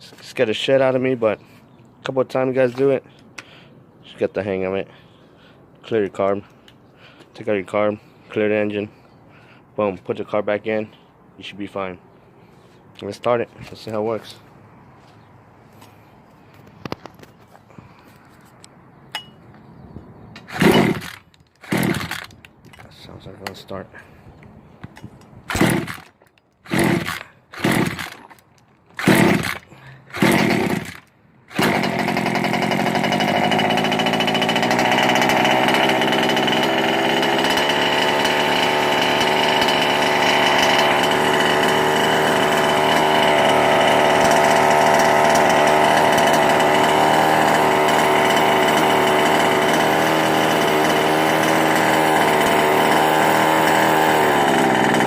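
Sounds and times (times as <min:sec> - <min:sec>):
recoil starter pulls: 0:20.4 - 0:23.6, 0:25.0 - 0:55.0
small two-stroke engine running: 0:20.5 - 0:22.3, 0:25.5 - 0:26.1, 0:26.7 - 0:28.3, 0:29.0 - 0:55.0.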